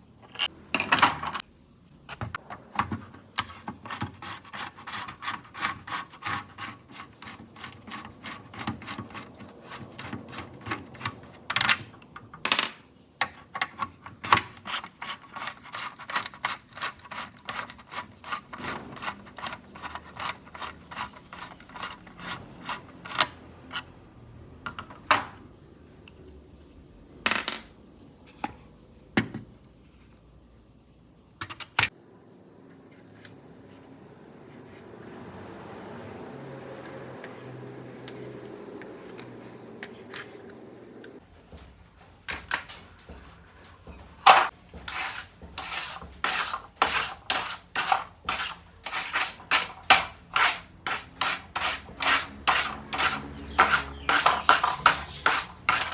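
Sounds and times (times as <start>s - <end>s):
scrubbing on a hard surface: 44.7s - 55.9s.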